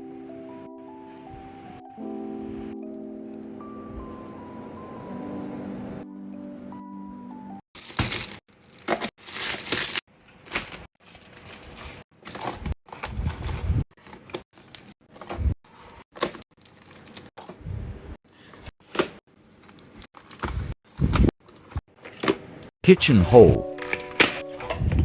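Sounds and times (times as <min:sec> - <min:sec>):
packaging rustling: 0:07.8 - 0:17.3.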